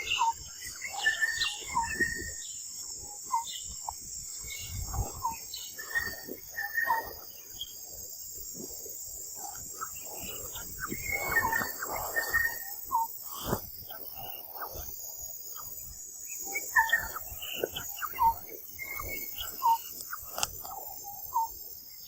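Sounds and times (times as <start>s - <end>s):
insects droning: 0.0s - 22.0s
short chirping calls: 16.3s - 21.6s.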